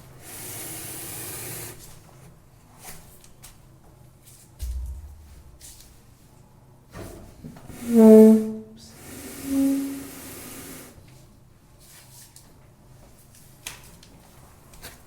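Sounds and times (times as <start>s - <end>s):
bed sliding hiss: 8.9s - 11.0s.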